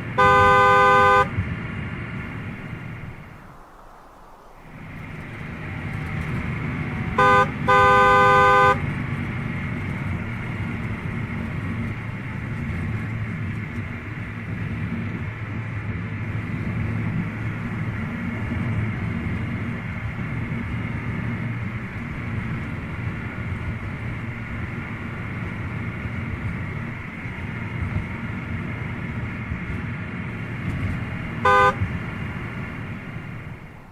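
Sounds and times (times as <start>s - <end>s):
car horn honking: 0.0s - 1.4s, 5.5s - 9.0s, 30.8s - 32.6s
car engine running: 0.0s - 33.9s.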